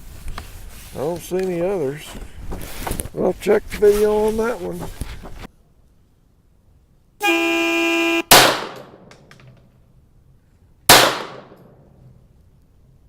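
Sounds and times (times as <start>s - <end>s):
pistol shots: 8.3s - 9.2s, 10.9s - 11.8s.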